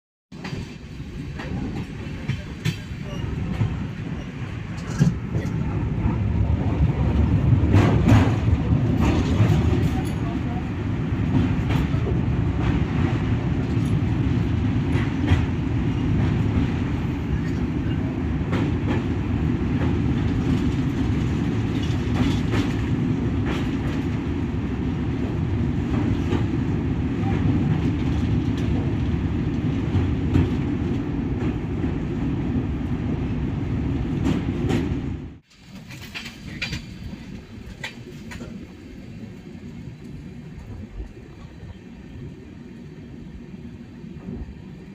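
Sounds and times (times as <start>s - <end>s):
train rumbling over bridge: 0.3s - 44.9s
wheels clicking over rail joints: 34.2s - 41.8s.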